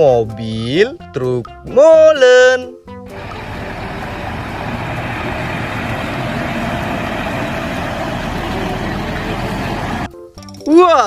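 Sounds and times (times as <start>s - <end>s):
heavy truck engine running: 3.1s - 10.1s.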